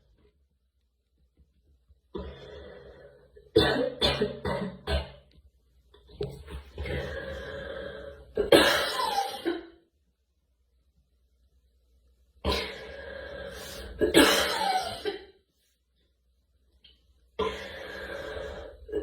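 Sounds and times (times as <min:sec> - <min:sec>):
girl coughing: 0:03.6 - 0:05.1, 0:08.4 - 0:09.8, 0:14.0 - 0:15.4.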